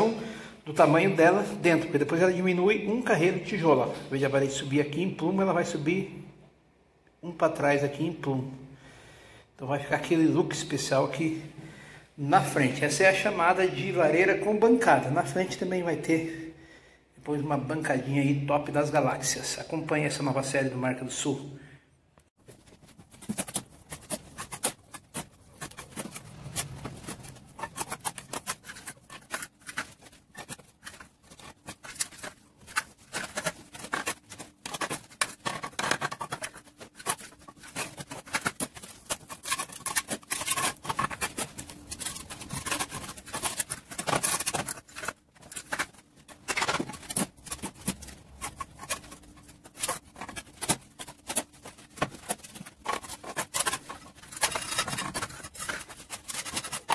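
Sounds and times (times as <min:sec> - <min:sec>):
masonry hand-tool clicking and scraping: 0:23.1 - 0:56.9.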